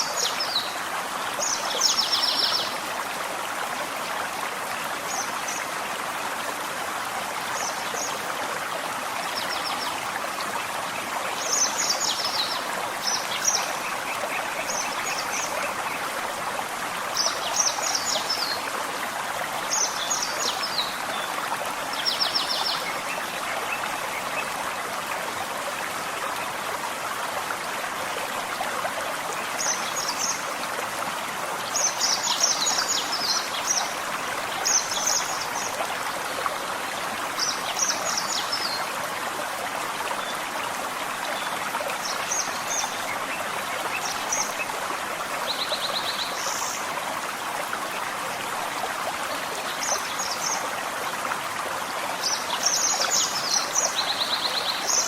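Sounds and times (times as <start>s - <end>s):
stream running: 0.0s - 55.0s.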